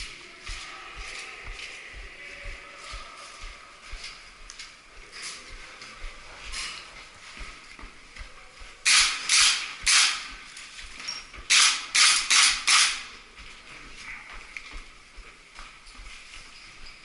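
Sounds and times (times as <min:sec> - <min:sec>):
footsteps crunching on dry ground: 0:00.0 - 0:08.8.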